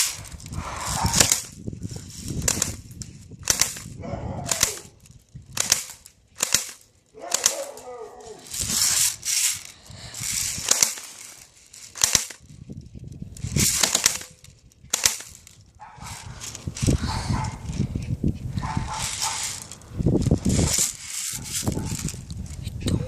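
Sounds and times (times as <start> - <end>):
airsoft gun shots: 3.4 - 4.9, 5.6 - 7.8, 10.6 - 11.0, 11.9 - 12.4, 13.6 - 15.4.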